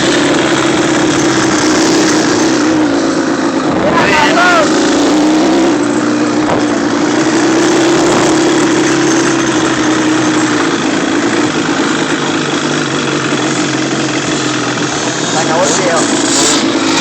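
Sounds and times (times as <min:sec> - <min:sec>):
off-road engine running: 0:00.0 - 0:17.0
wide rushing noise: 0:00.0 - 0:17.0.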